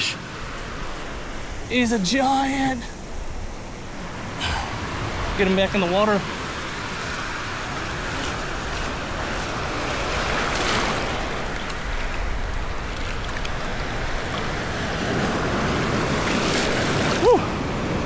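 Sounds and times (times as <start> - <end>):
wind buffeting microphone: 2.9 - 18.0
surf breaking on beach: 4.2 - 18.0.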